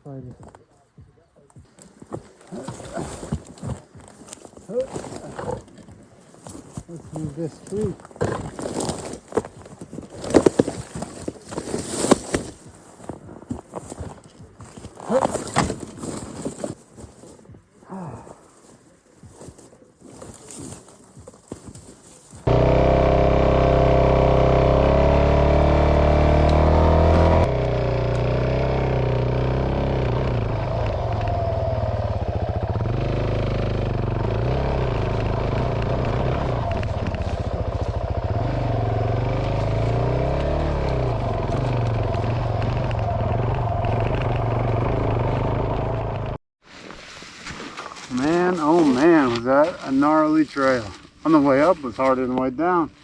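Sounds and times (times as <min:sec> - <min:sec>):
motorcycle engine revving: 0:22.4 - 0:46.4.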